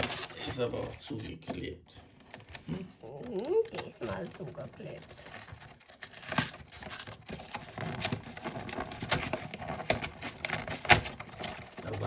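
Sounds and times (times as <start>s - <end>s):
fingers scratching cardboard tape: 4.9s - 12.0s.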